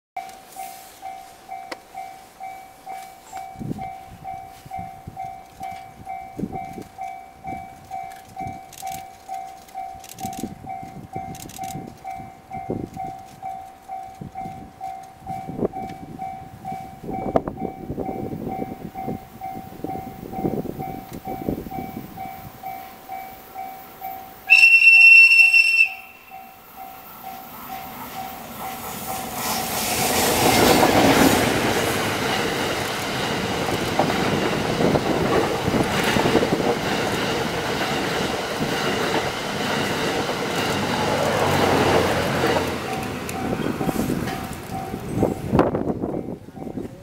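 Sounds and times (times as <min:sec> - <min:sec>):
level crossing alarm ringing: 0:00.2 - 0:28.8
train horn: 0:24.5 - 0:26.5
train wheels clattering over rail joints: 0:27.7 - 0:45.4.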